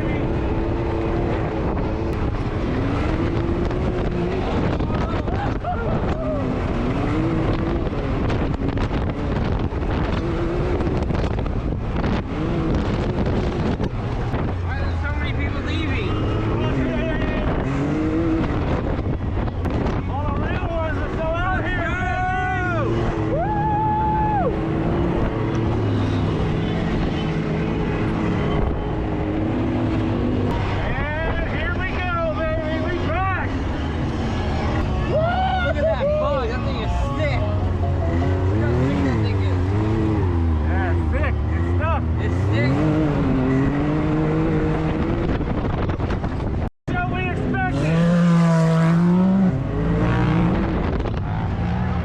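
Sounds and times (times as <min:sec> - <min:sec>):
wind buffeting microphone: 0:00.0 - 0:15.6, 0:16.4 - 0:22.0, 0:22.8 - 0:32.6, 0:42.0 - 0:46.7, 0:48.2 - 0:52.0
off-road engines revving: 0:00.0 - 0:52.0.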